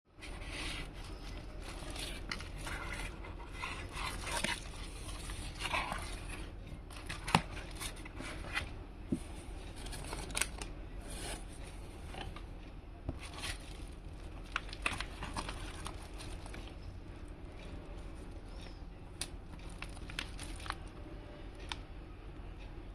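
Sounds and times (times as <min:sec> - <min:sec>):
wrapping crinkling and tearing: 0:09.7 - 0:11.4, 0:13.2 - 0:16.8, 0:19.2 - 0:20.9.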